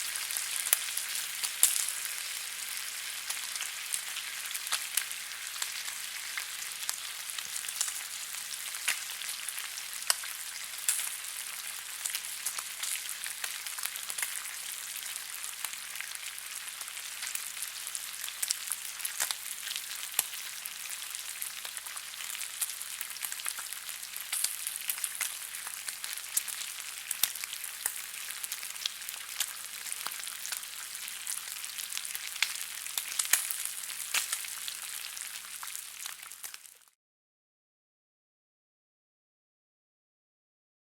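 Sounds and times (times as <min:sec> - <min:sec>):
bacon sizzling in a pan: 0:00.0 - 0:37.0
grease crackling and popping: 0:32.1 - 0:34.7.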